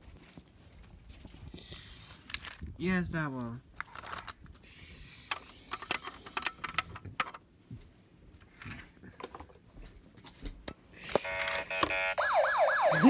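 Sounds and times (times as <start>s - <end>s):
plastic toys clicking and clacking: 5.2s - 7.4s.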